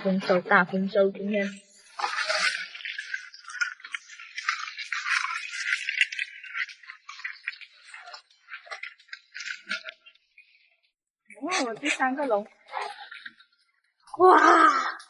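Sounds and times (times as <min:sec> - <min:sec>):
crabs clattering in a tray: 0:02.0 - 0:10.0.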